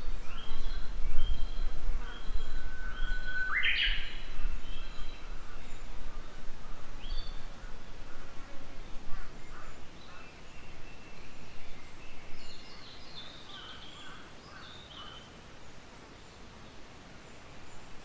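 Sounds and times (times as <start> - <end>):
bird singing whistle and notes: 0.2 - 5.2.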